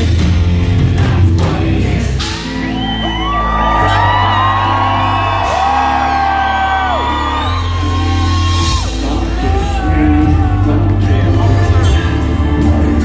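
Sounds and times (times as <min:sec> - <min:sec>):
male vocalist singing: 0:00.0 - 0:02.6, 0:08.4 - 0:13.0
heavy bass line: 0:00.0 - 0:13.0
rock band playing live: 0:00.0 - 0:13.0.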